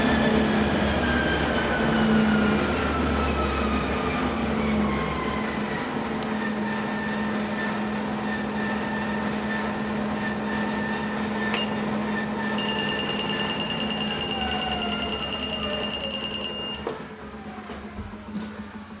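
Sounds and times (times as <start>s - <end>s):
treadmill motor hum and whine: 0.0s - 19.0s
click: 11.5s - 11.7s
continuous high-pitched beep: 12.6s - 17.0s.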